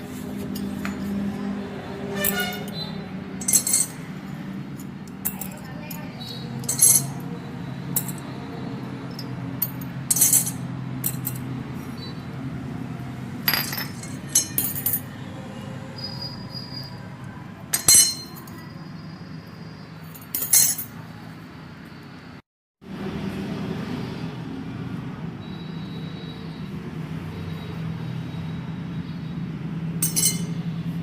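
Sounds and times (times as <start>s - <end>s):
metal tools clinking and knocking: 0.4s - 1.2s, 2.1s - 2.8s, 3.4s - 4.1s, 4.7s - 7.3s, 7.9s - 8.4s, 9.1s - 11.5s, 13.4s - 15.1s, 17.7s - 18.7s, 20.1s - 21.0s, 30.0s - 30.6s.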